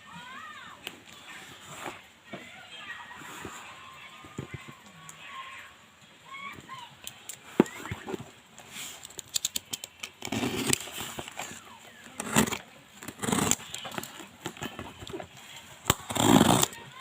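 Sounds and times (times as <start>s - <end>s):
packaging rustling: 7.3s - 17.0s.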